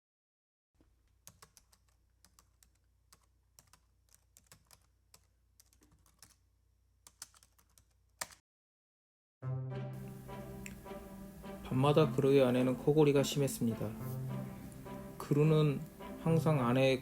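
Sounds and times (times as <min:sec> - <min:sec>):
computer keyboard keystrokes: 0:01.2 - 0:06.4, 0:07.0 - 0:08.4.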